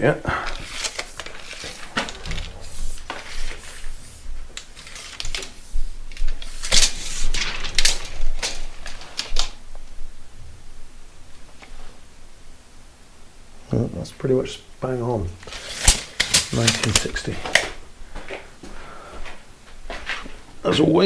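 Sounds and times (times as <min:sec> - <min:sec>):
tape measure clicking and rattling: 0:00.6 - 0:09.6, 0:15.4 - 0:17.7.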